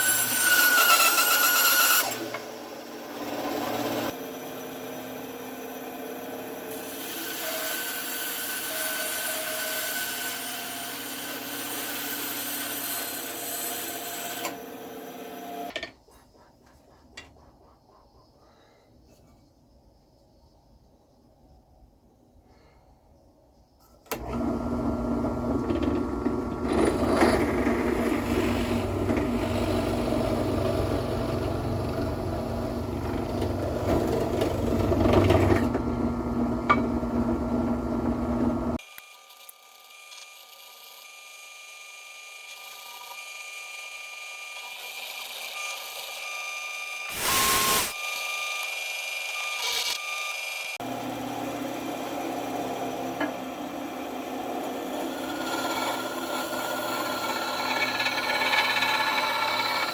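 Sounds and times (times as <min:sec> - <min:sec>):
workshop machine humming: 0:24.1 - 0:38.8, 0:50.8 - 0:59.9
machine high whine: 0:47.1 - 0:48.0
short loud machine burst: 0:47.1 - 0:48.0.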